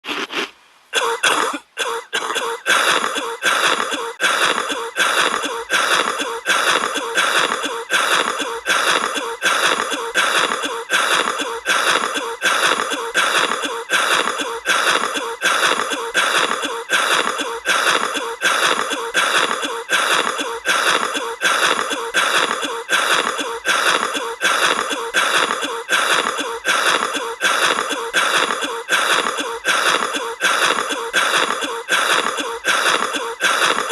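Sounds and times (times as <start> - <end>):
cartoon duck coughing: 0.9 - 33.9.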